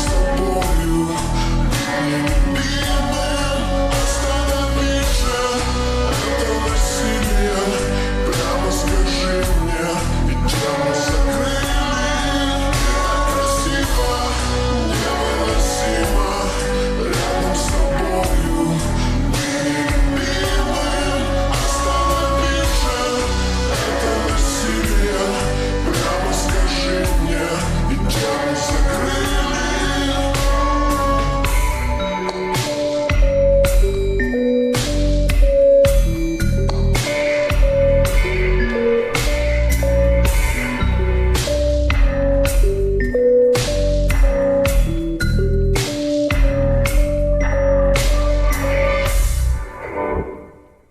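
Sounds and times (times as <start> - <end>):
slowed reverb-heavy pop song: 0.0 - 50.9.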